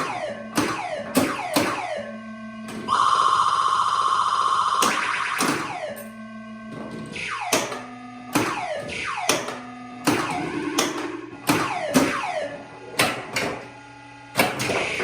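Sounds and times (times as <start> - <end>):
pinball machine knocks: 0.0 - 2.0, 4.8 - 6.0, 6.7 - 13.7, 14.4 - 15.0
short steady electronic tones: 2.0 - 5.4.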